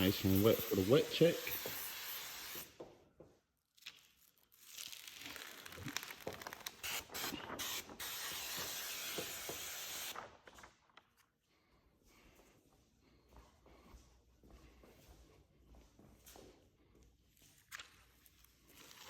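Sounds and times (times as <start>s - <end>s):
water sprayer spritzing: 0.0s - 2.7s, 6.7s - 10.1s.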